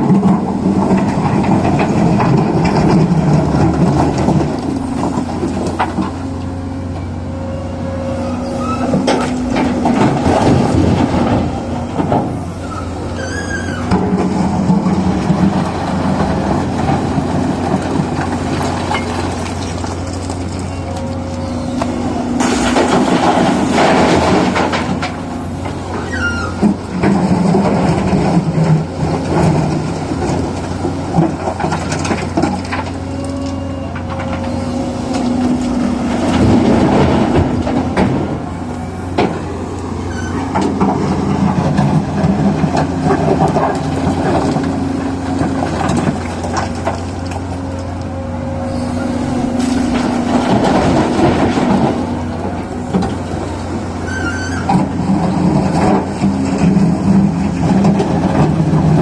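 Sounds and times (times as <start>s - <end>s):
excavator engine running: 0.0s - 59.0s
brief squeak: 8.2s - 9.0s, 12.6s - 13.9s, 26.0s - 26.6s, 40.1s - 40.5s.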